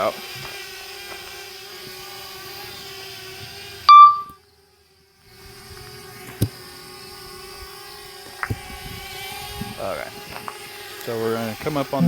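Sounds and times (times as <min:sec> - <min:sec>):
short electronic beep: 0:03.9 - 0:04.4.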